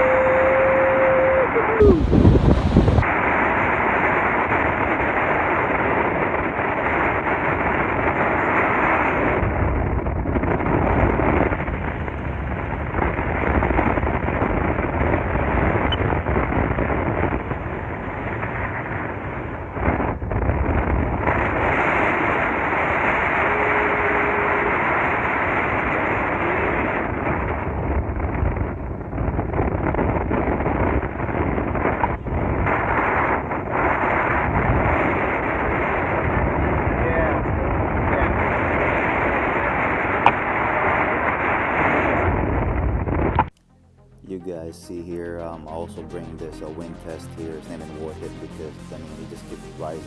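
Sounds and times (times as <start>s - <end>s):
strong wind on microphone: 0.0s - 43.5s.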